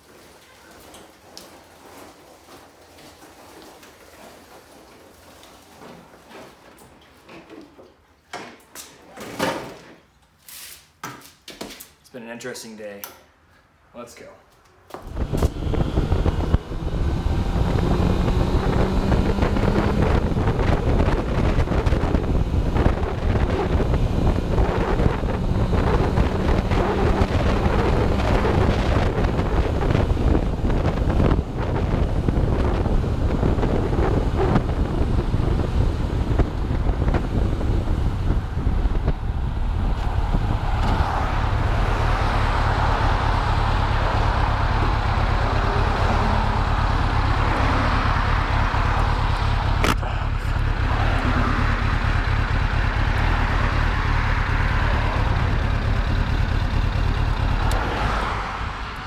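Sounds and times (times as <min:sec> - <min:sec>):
motorcycle engine running: 0:15.0 - 0:59.0
wind rushing over microphone: 0:15.0 - 0:59.0.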